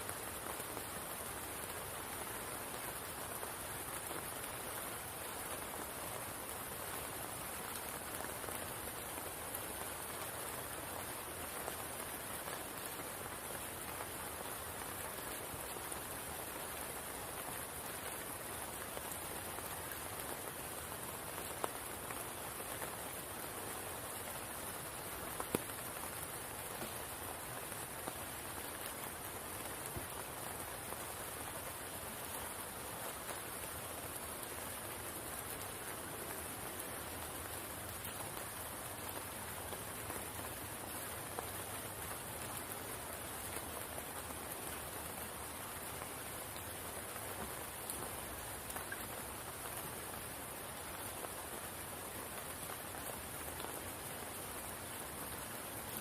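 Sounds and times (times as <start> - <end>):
rain falling on water: 0.0 - 56.0.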